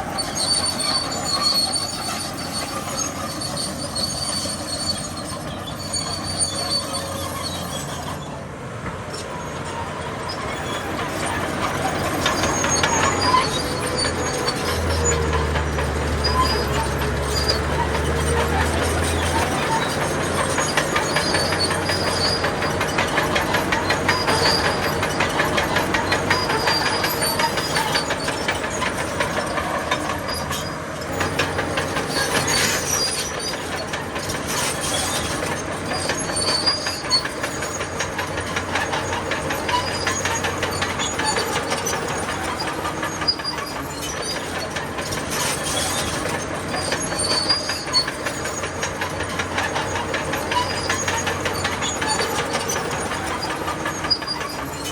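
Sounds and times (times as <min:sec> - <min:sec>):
short high squeaks: 0:00.0 - 0:08.4, 0:09.1 - 0:54.9
diesel engine running: 0:00.0 - 0:54.9
steel tracks clattering: 0:00.0 - 0:54.9.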